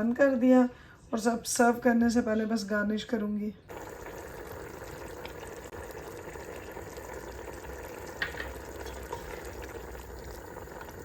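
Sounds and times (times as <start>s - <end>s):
food sizzling in a pan: 3.7s - 11.0s.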